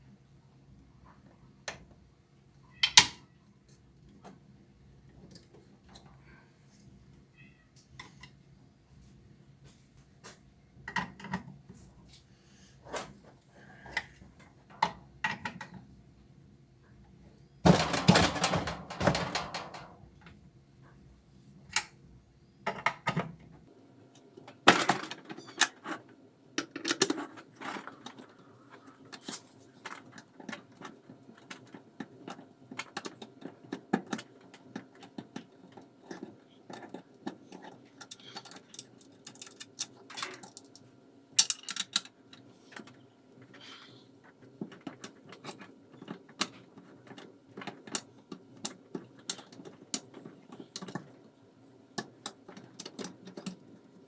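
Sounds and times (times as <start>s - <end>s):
tools and metal parts clinking: 17.7s - 19.9s, 36.2s - 40.8s, 41.4s - 42.1s.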